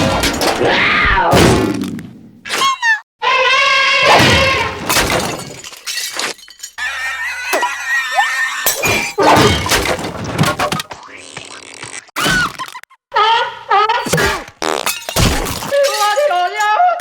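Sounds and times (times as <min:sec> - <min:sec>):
crashes and smashing breakage: 0:00.0 - 0:00.8, 0:04.1 - 0:10.9, 0:14.1 - 0:16.7.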